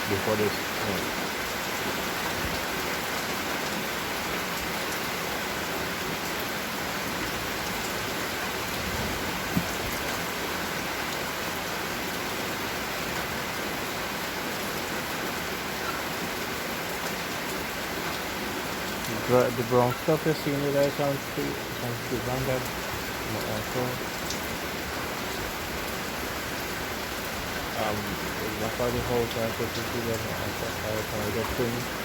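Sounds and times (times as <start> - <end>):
rain pattering: 0.0 - 32.0.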